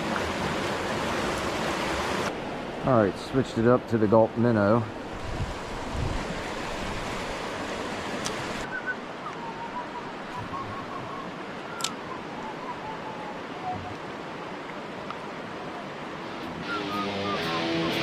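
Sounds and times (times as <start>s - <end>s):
river current rushing: 0.0s - 18.0s
faint wavering whistle-like notes: 8.7s - 14.0s, 16.5s - 18.0s.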